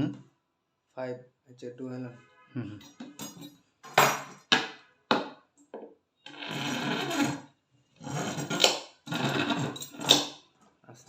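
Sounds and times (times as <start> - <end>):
hand tool rasping: 6.3 - 7.4, 8.0 - 10.4.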